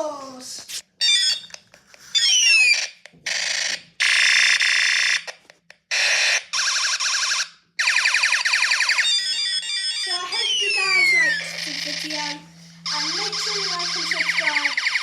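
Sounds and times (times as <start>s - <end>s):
fast pulsing buzz: 10.3s - 15.0s.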